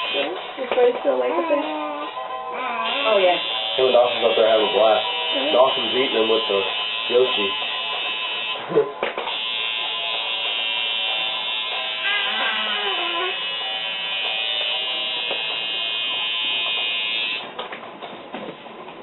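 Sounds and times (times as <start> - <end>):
tattoo machine buzzing: 0.0 - 0.4, 2.8 - 8.6, 9.2 - 17.5.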